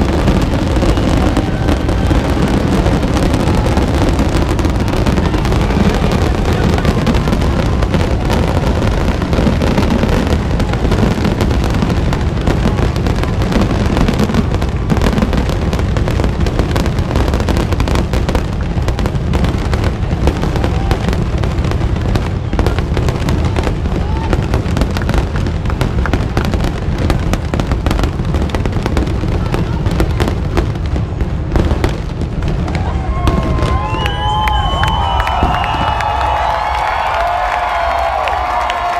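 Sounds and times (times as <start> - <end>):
fireworks bangs and crackle: 0.0 - 38.9.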